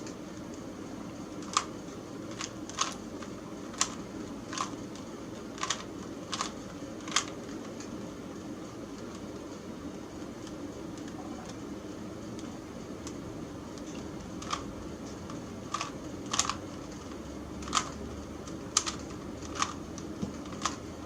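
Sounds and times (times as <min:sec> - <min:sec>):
low background hum: 0:00.0 - 0:21.0
puzzle cube clicking: 0:15.7 - 0:16.6.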